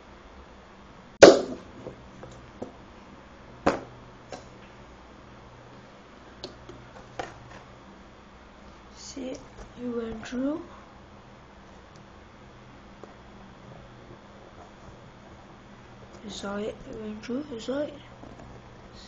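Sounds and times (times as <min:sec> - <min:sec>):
stapler crossbow firing snap: 0:01.2 - 0:01.6.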